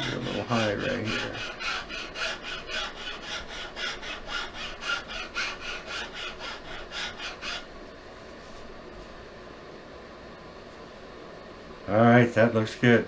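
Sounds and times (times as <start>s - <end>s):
hand strokes sanding wood: 0.0s - 7.7s.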